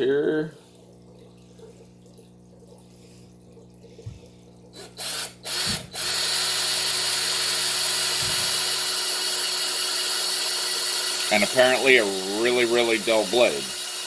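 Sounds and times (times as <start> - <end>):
low steady hum: 0.0 - 5.0
power drill boring into plastic: 4.8 - 14.0.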